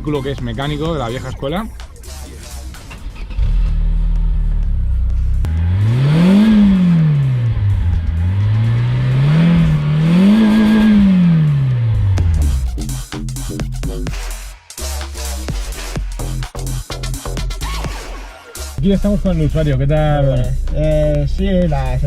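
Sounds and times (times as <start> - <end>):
car engine idling and revving: 0.0 - 22.0.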